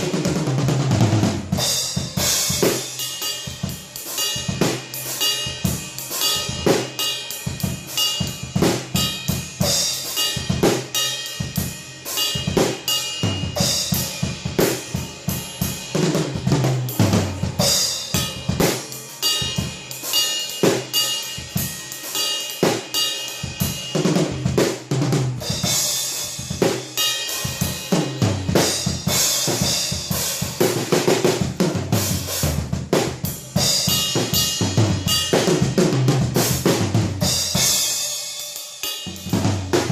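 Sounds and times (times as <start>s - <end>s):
drum kit fast groove: 0.0s - 39.9s.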